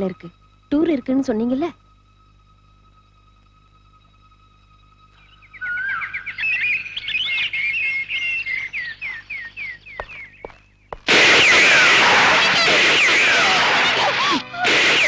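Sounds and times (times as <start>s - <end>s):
faint steady tone: 0.0s - 10.8s
small birds chirping: 5.1s - 11.9s.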